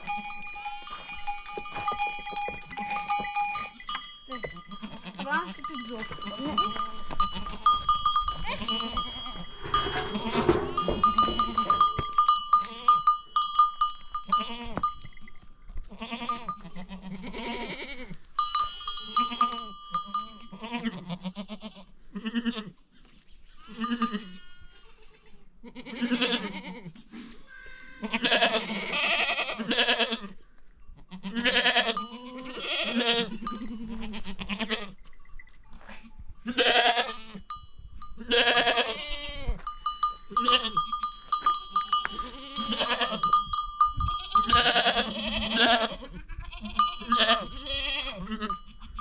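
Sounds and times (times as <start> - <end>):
goats bleating: 0.0 - 13.1, 15.8 - 18.2, 18.8 - 22.7, 23.6 - 26.9, 28.0 - 30.3, 31.2 - 35.0, 36.5 - 37.4, 38.2 - 39.7, 40.3 - 43.4, 44.1 - 49.0
metal livestock bell ringing: 0.0 - 17.2, 18.4 - 20.8, 23.7 - 25.5, 30.8 - 39.0, 39.6 - 45.8, 46.7 - 49.0.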